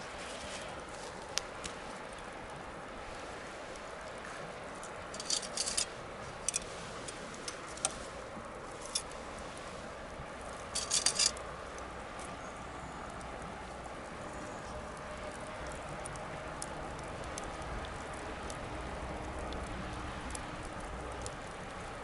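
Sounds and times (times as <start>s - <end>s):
fire hissing: 0.0s - 12.2s
bonfire crackling and popping: 0.0s - 22.0s.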